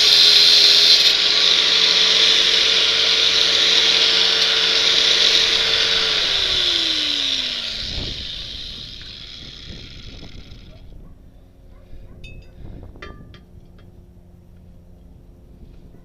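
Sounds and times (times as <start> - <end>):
angle grinder cutting steel: 0.0 - 10.8
grinder spinning down: 0.0 - 10.9.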